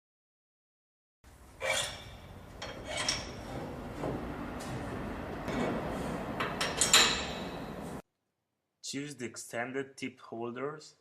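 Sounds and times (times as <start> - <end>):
metal clinks and knocks: 1.8 - 3.8, 6.4 - 7.8.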